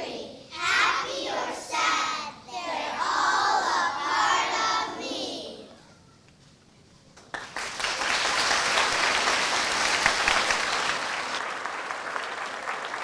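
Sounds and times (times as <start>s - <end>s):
audience clapping: 7.2s - 13.0s.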